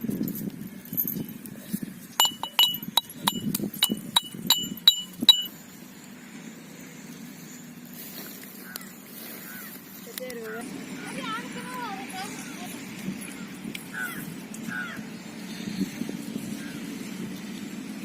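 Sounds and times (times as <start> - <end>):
hard objects clinking: 2.1 - 5.5.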